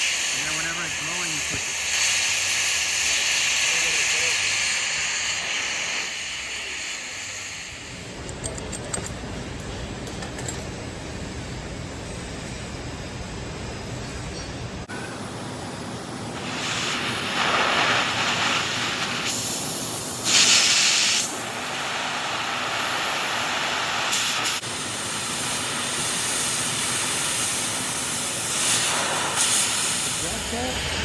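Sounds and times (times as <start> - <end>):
cutting torch hissing: 0.0 - 8.2, 14.9 - 31.0.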